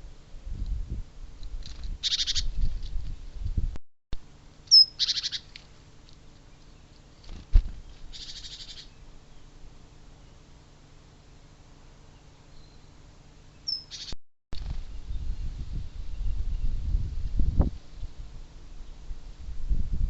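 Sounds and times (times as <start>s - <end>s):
small birds chattering calls: 4.7s - 5.6s, 7.9s - 9.6s, 12.1s - 14.2s.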